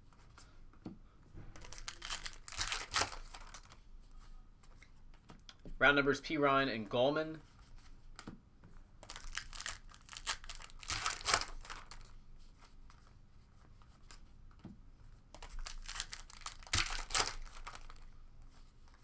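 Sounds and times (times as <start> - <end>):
foil wrapper crinkling and tearing: 1.6 - 3.8, 9.0 - 12.1, 15.4 - 18.0
cards being handled: 1.6 - 5.7, 7.4 - 19.0.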